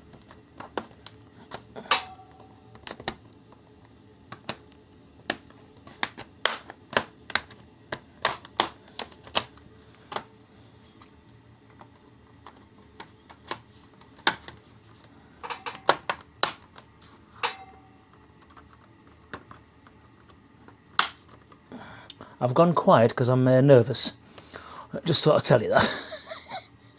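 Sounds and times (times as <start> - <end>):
plastic clicks and snaps: 4.3 - 10.3, 15.4 - 17.6, 21.0 - 22.2.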